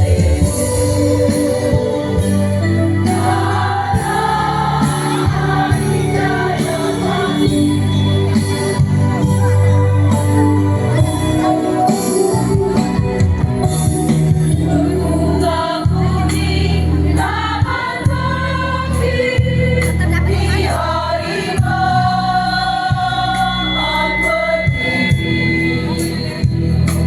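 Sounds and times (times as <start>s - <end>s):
choir singing: 0.0s - 9.0s, 14.7s - 25.1s.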